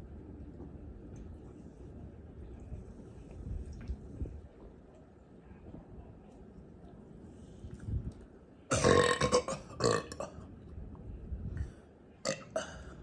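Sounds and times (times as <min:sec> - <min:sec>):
person burping: 0:08.7 - 0:10.4, 0:12.3 - 0:13.0.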